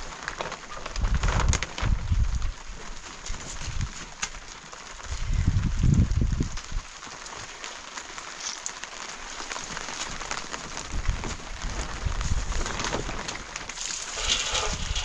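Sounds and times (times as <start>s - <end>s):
rain falling: 0.0s - 15.0s
low rumbles: 13.8s - 15.0s.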